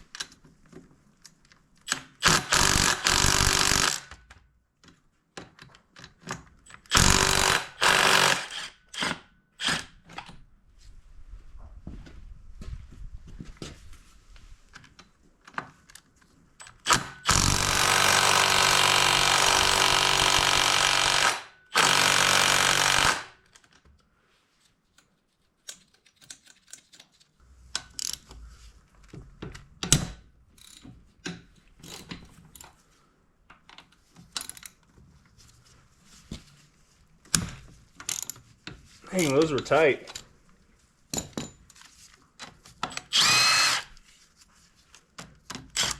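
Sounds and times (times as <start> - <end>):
impact driver hammering: 2.2 - 4.1, 6.9 - 8.6, 16.9 - 23.4
metallic clicks of tools: 25.0 - 28.4, 29.5 - 32.8.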